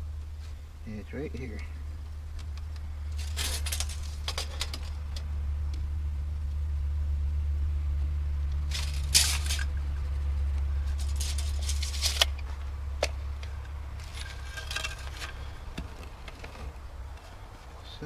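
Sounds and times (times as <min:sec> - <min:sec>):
low rumble: 0:00.0 - 0:17.6
scraping: 0:03.0 - 0:05.3, 0:08.6 - 0:17.6.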